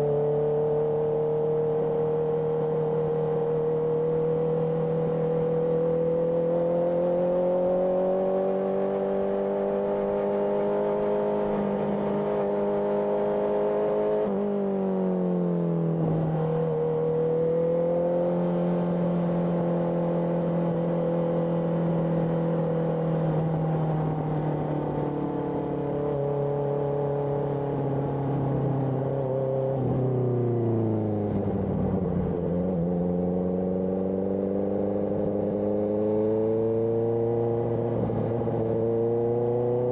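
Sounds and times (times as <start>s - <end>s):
motorcycle engine: 15.9s - 39.9s.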